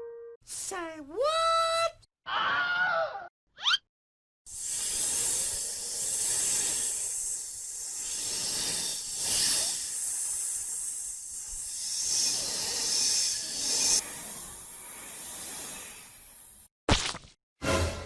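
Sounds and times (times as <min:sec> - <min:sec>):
steady hissing noise: 0:04.5 - 0:16.6.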